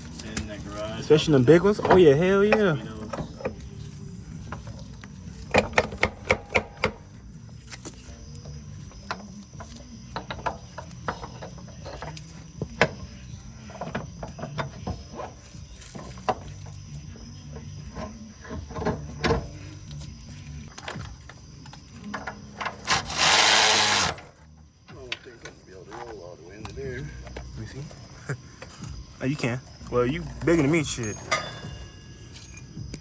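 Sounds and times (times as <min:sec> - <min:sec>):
faint background music: 0:00.0 - 0:33.0
hand tools knocking on metal: 0:01.4 - 0:03.6, 0:30.2 - 0:32.4.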